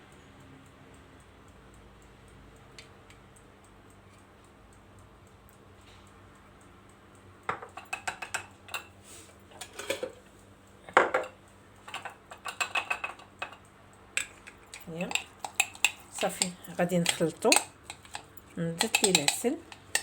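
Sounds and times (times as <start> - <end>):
spoon clinking against glass jar: 14.2 - 20.0.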